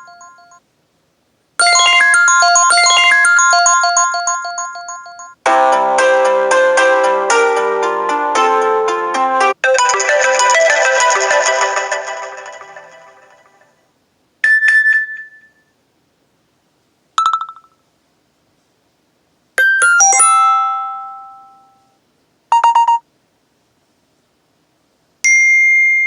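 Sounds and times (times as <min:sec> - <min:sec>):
musical ringtone: 0:00.0 - 0:00.6, 0:01.6 - 0:13.7, 0:19.6 - 0:21.8
rapid beeps: 0:22.5 - 0:23.0.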